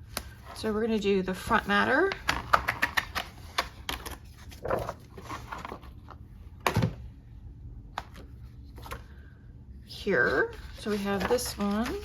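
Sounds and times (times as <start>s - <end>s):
paper rustling: 1.4s - 6.1s, 10.4s - 12.0s.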